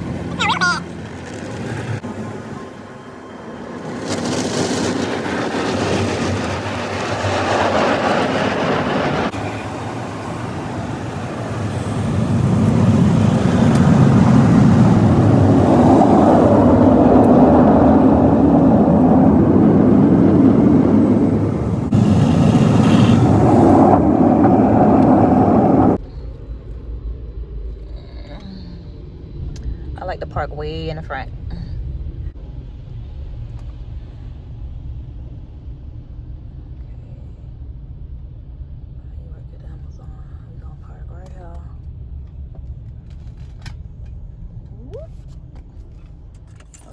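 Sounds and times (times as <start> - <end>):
car wash rushing noise: 0.0 - 26.0.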